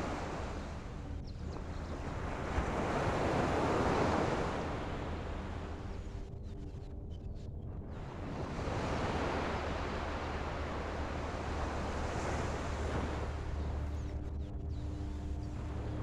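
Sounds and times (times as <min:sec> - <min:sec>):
ocean water washing along shore: 0:00.0 - 0:06.2, 0:08.0 - 0:14.3
steady low hum: 0:00.0 - 0:16.0.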